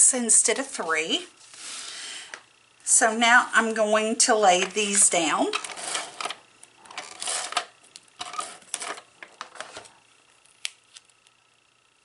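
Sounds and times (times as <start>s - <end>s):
paper pieces rustling and sliding: 5.6s - 10.0s.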